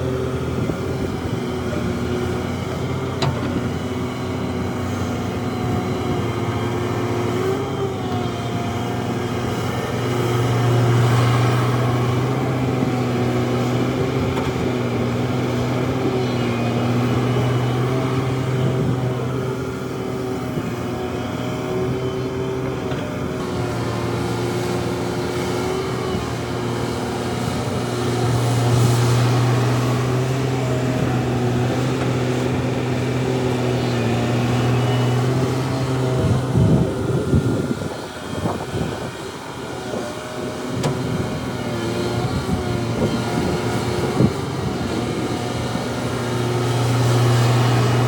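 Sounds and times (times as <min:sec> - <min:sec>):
diesel machinery engine hum: 0:00.0 - 0:48.0.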